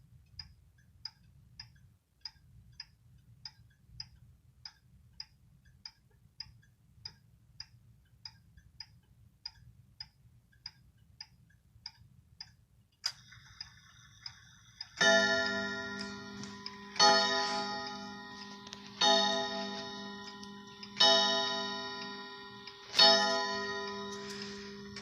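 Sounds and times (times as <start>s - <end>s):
wall clock ticking: 0.0s - 25.0s
clock mechanism click and running: 11.9s - 25.0s
ringing gong chime: 15.0s - 25.0s.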